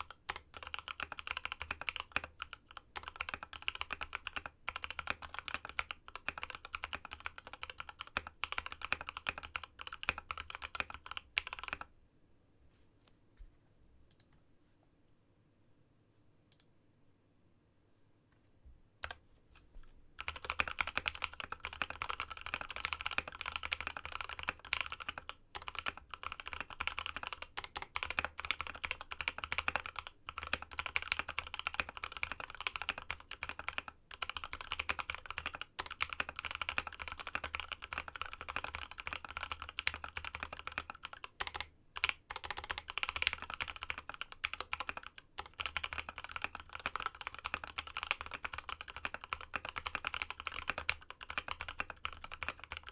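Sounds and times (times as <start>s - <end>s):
mechanical keyboard typing: 0.0s - 11.9s, 20.2s - 52.9s.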